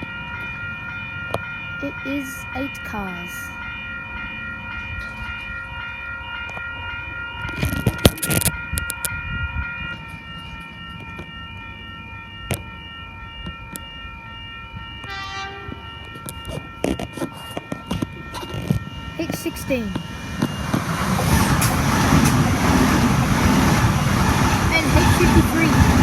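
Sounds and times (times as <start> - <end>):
electric train whine: 3.5 - 19.2, 19.8 - 26.0
train clattering and rumbling: 19.9 - 26.0.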